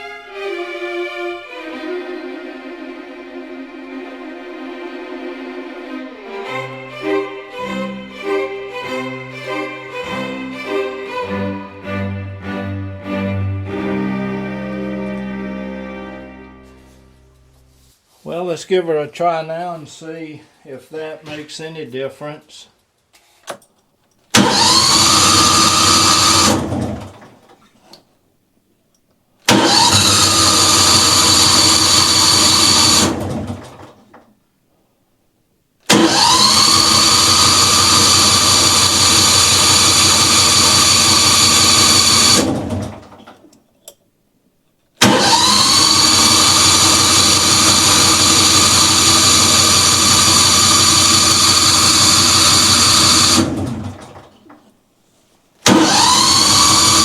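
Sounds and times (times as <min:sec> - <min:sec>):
engine cranking on starter: 0:24.3 - 0:27.6, 0:29.5 - 0:34.2, 0:35.9 - 0:43.5, 0:45.0 - 0:54.5, 0:55.6 - 0:57.0.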